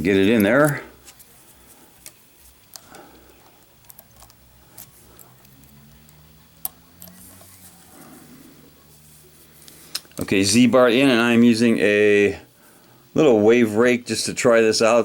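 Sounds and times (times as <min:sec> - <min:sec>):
small metal clicks and taps: 0:02.0 - 0:07.2.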